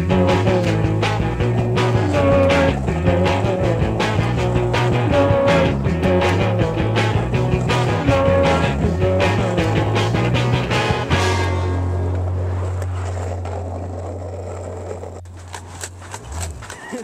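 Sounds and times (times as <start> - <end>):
rock music: 0.0 - 12.6.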